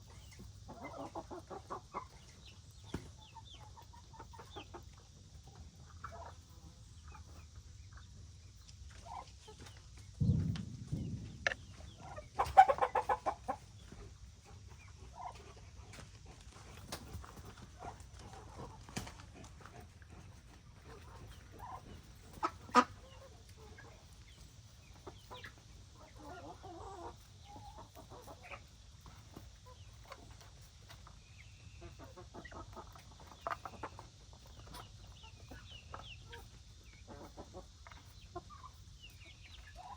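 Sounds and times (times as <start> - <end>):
chickens clucking: 0.0 - 39.9
dull low thump: 10.2 - 13.5.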